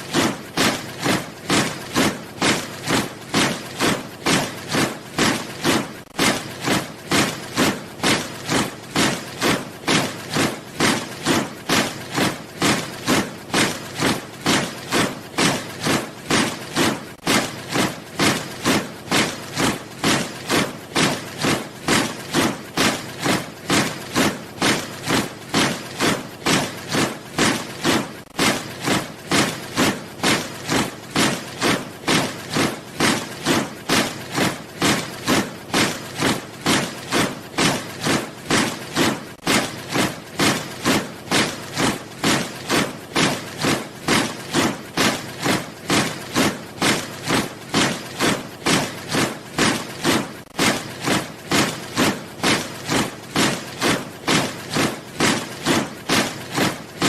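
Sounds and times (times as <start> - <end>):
soldiers marching in step: 0.0 - 57.0.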